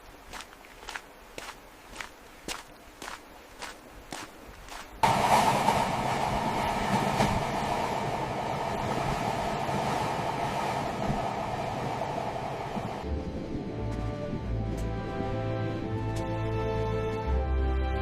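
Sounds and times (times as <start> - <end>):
steady rumbling noise: 4.9 - 16.4.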